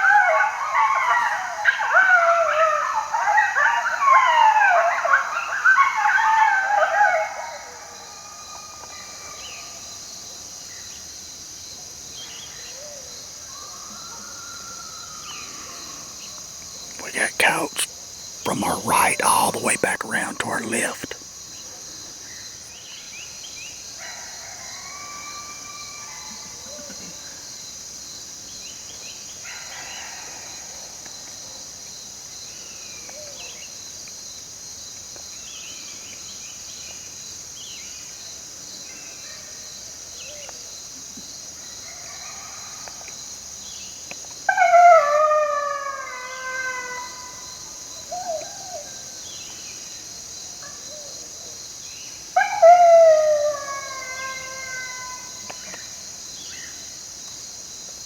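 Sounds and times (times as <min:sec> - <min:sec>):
coyotes howling and yipping: 0:00.0 - 0:09.5, 0:44.5 - 0:47.5, 0:52.4 - 0:55.5.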